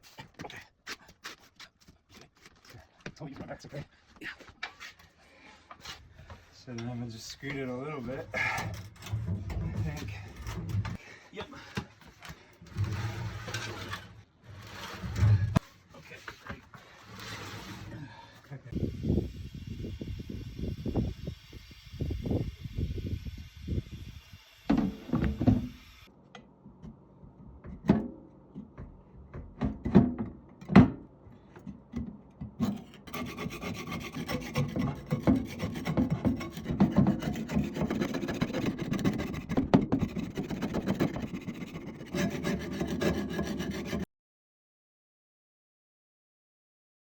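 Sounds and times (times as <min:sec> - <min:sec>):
continuous scraping and rubbing: 0:00.0 - 0:11.1, 0:12.1 - 0:18.8, 0:32.6 - 0:44.1
heavy metal press scraping on floor: 0:12.7 - 0:15.7, 0:17.0 - 0:17.9.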